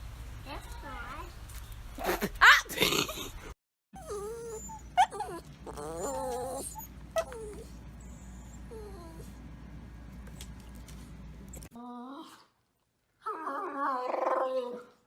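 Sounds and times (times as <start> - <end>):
dog whining: 4.0 - 9.4.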